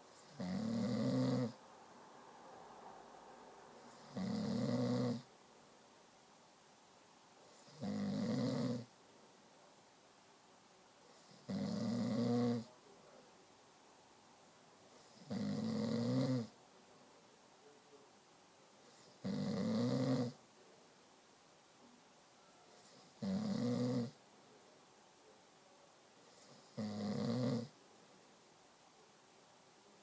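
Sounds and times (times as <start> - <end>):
person snoring: 0.3 - 1.6, 3.9 - 5.2, 7.6 - 8.9, 11.2 - 12.7, 15.2 - 16.5, 19.0 - 20.4, 22.9 - 24.2, 26.4 - 27.7
quiet breathing: 14.8 - 20.8, 21.8 - 23.4.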